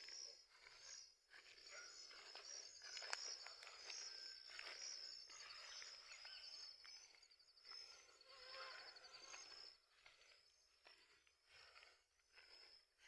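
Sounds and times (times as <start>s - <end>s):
faint bird calls: 1.6s - 11.1s.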